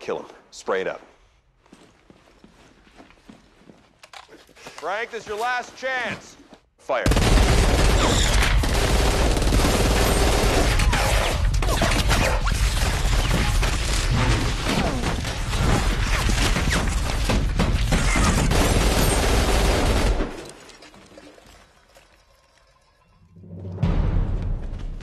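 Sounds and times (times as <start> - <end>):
automatic gunfire: 7.1 - 13.9, 15.4 - 20.4.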